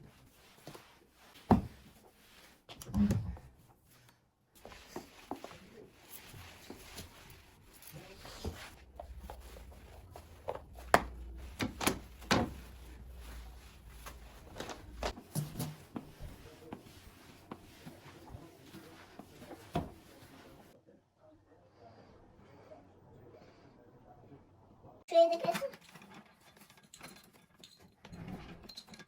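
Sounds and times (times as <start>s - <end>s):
household knocks and clicks: 8.6s - 16.9s
low hum: 8.8s - 15.1s.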